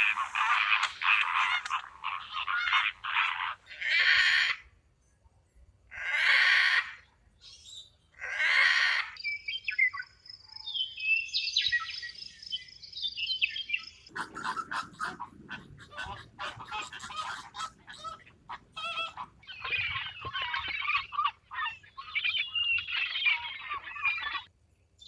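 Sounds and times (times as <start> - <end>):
harsh animal calls: 0.0 - 4.7, 5.9 - 7.1, 8.2 - 9.2, 14.1 - 24.5
birds chirping and whistling: 9.2 - 14.7, 16.4 - 24.5.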